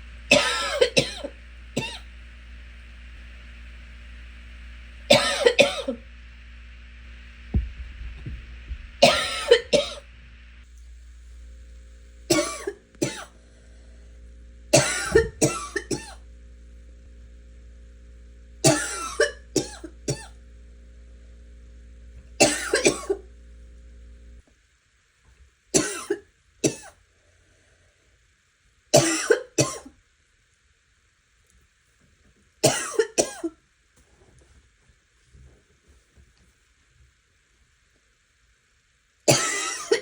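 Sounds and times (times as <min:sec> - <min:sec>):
steady low hum: 0:00.0 - 0:24.5
person coughing: 0:00.3 - 0:02.0, 0:05.1 - 0:06.0, 0:09.0 - 0:10.0, 0:12.3 - 0:13.4, 0:14.8 - 0:16.2, 0:18.7 - 0:20.4, 0:22.4 - 0:23.2, 0:32.6 - 0:33.6, 0:39.3 - 0:40.0.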